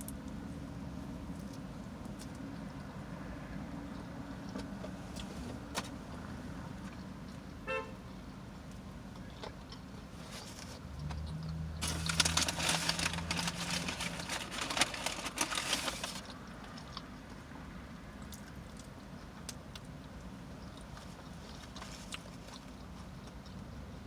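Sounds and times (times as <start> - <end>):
close crackling and crunching: 9.2 - 17.4, 18.2 - 23.6.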